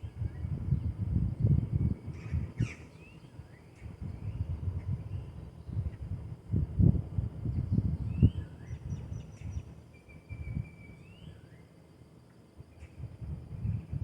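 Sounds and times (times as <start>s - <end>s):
wind rumble on microphone: 0.0s - 11.8s, 12.5s - 14.0s
birds whistling: 2.2s - 4.5s, 8.1s - 11.7s.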